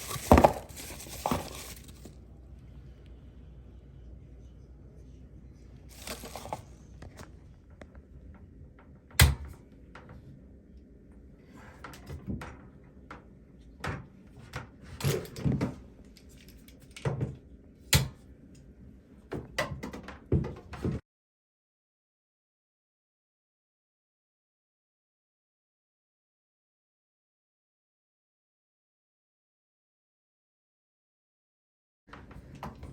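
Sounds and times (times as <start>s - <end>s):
parts and packaging handled: 0.0s - 2.3s, 5.9s - 7.3s.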